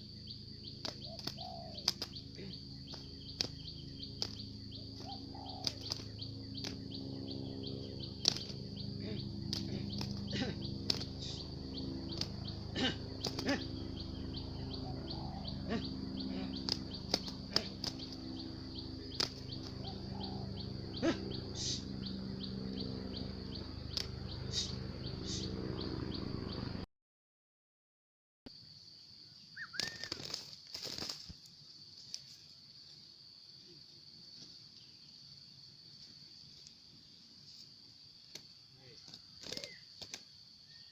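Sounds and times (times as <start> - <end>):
high-pitched whine: 0.0 - 26.8
doves cooing: 0.7 - 26.0, 39.0 - 40.2
sharp clicks: 0.8 - 2.2, 8.2 - 8.6.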